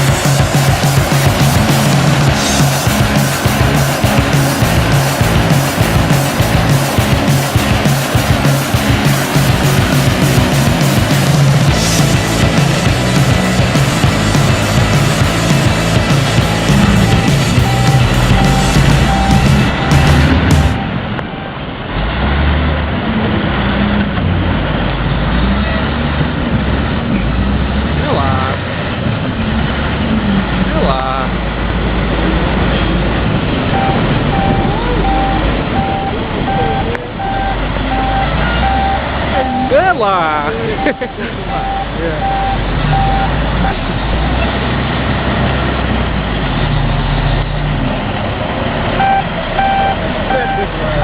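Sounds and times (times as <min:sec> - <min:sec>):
heavy machine engine running: 0:00.0 - 0:51.0
reversing alarm beeping: 0:15.4 - 0:21.7, 0:33.7 - 0:43.8, 0:49.0 - 0:51.0.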